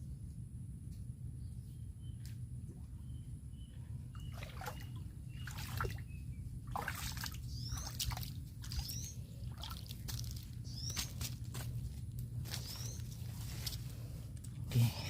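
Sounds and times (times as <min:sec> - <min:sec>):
steady low rumble: 0:00.0 - 0:15.0
water splashing and trickling: 0:04.2 - 0:11.3.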